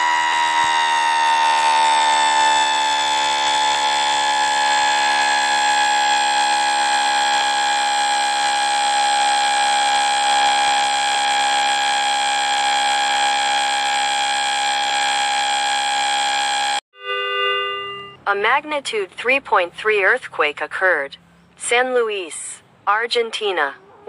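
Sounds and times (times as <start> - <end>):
loud steady electronic alarm tone: 0.0 - 18.2.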